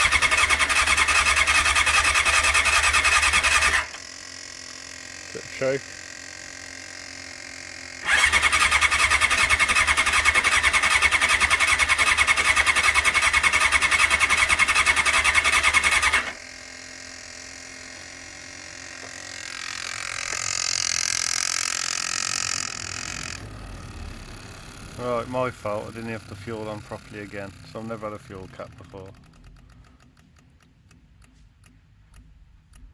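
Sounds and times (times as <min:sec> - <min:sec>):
motorcycle engine cranking: 0:00.0 - 0:04.1, 0:08.0 - 0:16.4, 0:18.8 - 0:30.6.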